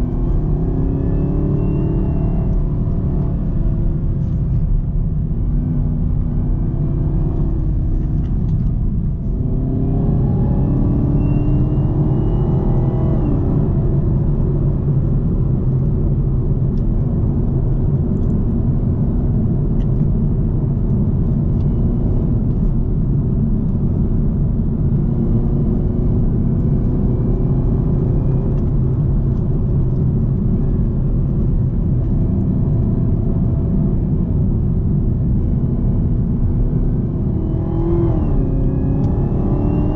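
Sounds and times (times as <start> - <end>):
car engine accelerating: 0.0 - 39.9
road rumble: 0.0 - 39.9
supercharger whine: 0.0 - 39.9.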